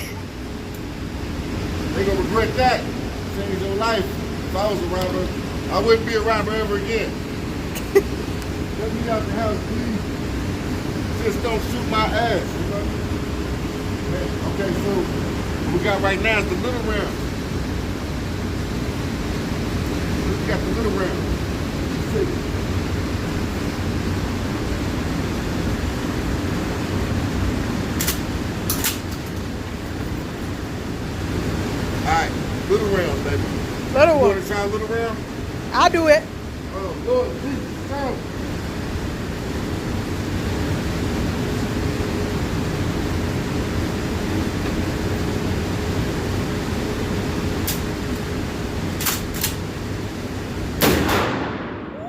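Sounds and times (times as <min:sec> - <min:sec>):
shotgun handling clicks: 0:28.0 - 0:29.4, 0:49.0 - 0:49.6
shotgun shot: 0:50.8 - 0:52.0.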